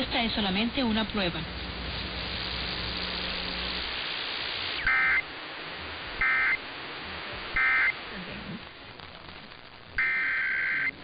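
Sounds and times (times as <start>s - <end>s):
broadcast hiss: 0.0s - 11.0s
digital tone bursts: 4.8s - 5.3s, 6.2s - 6.6s, 7.6s - 8.0s, 10.0s - 11.0s.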